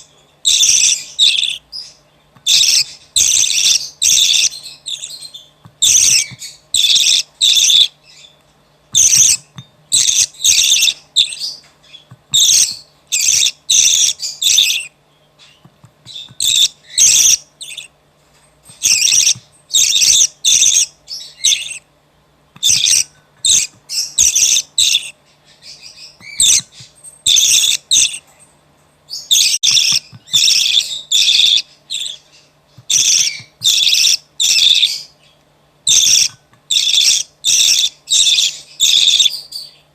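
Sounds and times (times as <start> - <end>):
bird chick begging calls: 0.5 - 1.6, 2.4 - 8.0, 9.0 - 11.6, 12.4 - 15.0, 16.1 - 17.9, 18.8 - 21.8, 22.6 - 25.2, 29.2 - 35.2, 35.9 - 39.7.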